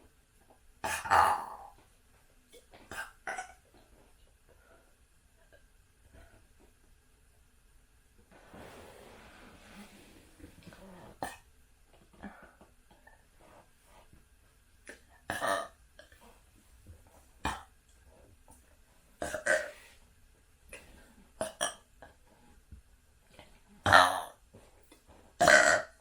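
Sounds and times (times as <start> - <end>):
person burping: 0.9 - 1.8, 15.3 - 15.8, 19.2 - 19.8, 21.4 - 21.8, 23.9 - 24.4, 25.4 - 26.0.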